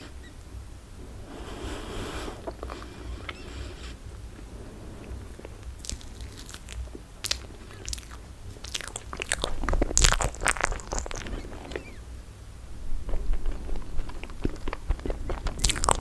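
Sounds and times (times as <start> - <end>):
sticky wet chewing: 4.4 - 12.0, 13.0 - 16.0.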